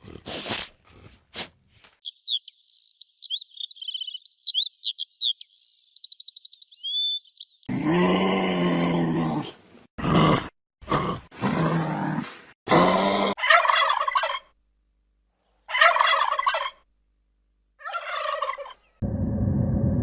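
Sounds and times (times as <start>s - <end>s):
animal calls: 17.8s - 18.8s.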